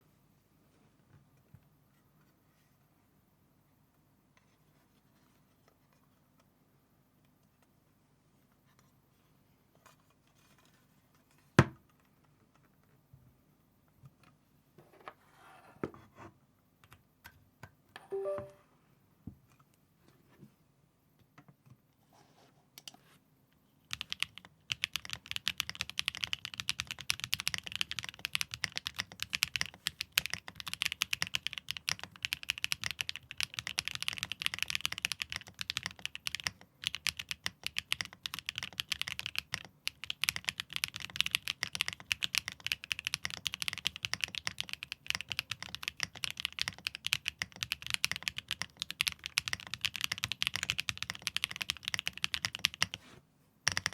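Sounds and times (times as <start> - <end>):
typing on mechanical keyboard: 18.1 - 18.4, 23.9 - 53.0, 53.7 - 53.9.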